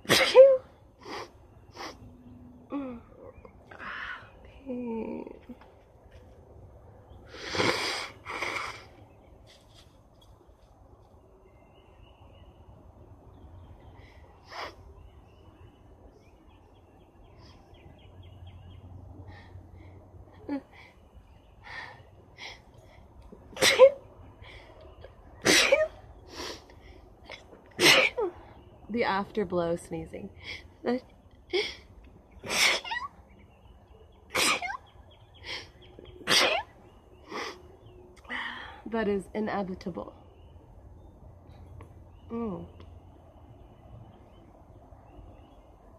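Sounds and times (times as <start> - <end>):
woman sneezing: 0.0 - 0.6, 25.4 - 26.0, 34.3 - 34.8, 36.2 - 36.7
birds chirping and trilling: 0.7 - 45.9.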